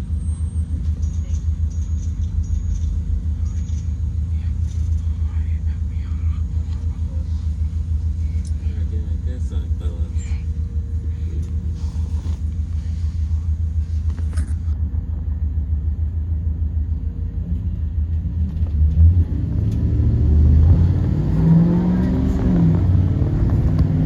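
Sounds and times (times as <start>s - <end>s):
bus engine rumbling: 0.0s - 24.0s.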